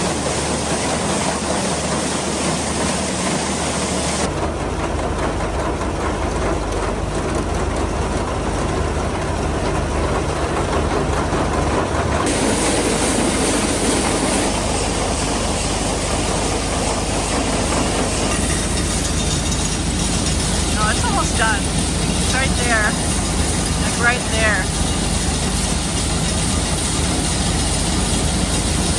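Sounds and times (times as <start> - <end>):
grain dryer droning: 0.0 - 28.9
hiss: 12.3 - 23.9, 24.6 - 28.9.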